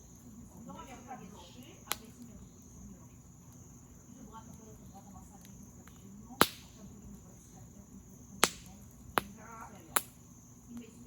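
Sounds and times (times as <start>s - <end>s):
campfire burning: 0.0s - 11.0s
crickets chirring: 0.0s - 11.0s
sharp wood pops: 6.4s - 6.8s, 8.4s - 10.2s.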